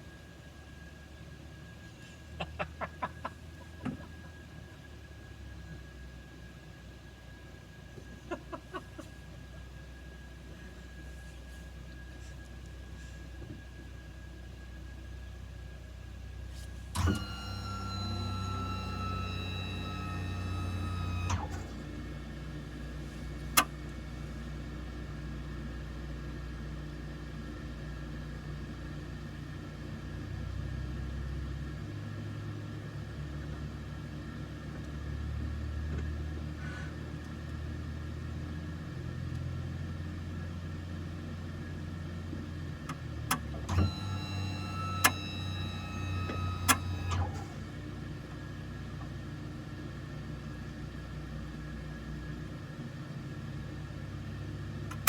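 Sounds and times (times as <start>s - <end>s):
electric motor whine: 16.9s - 24.5s, 43.6s - 47.6s.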